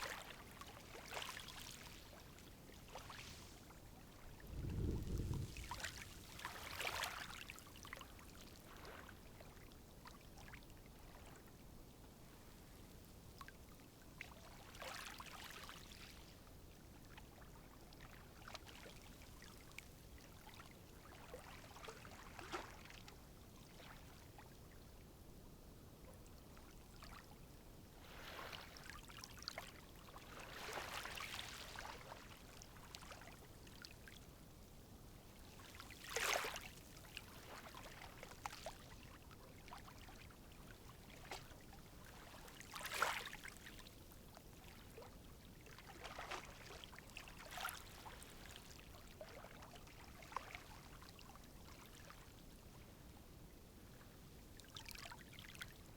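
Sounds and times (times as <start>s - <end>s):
water splashes: 4.4s - 7.1s.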